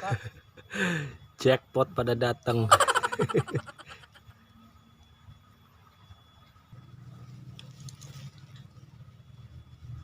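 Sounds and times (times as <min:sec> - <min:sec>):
faint background hum: 0:00.0 - 0:10.0.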